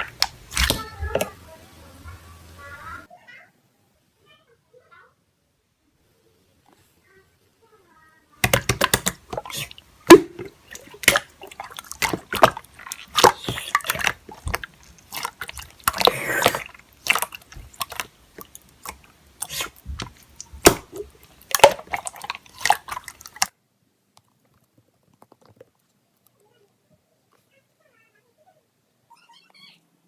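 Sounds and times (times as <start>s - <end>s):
wet smacks: 0.0s - 0.8s, 8.4s - 23.5s.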